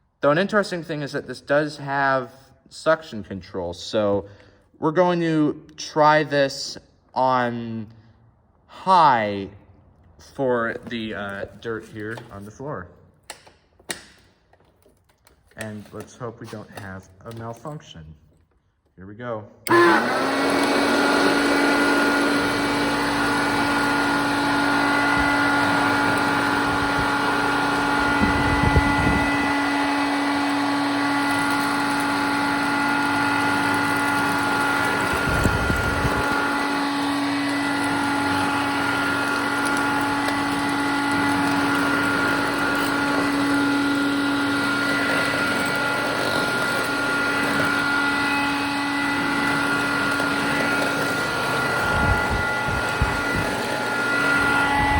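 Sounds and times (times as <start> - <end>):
vacuum cleaner running: 19.6 - 54.9.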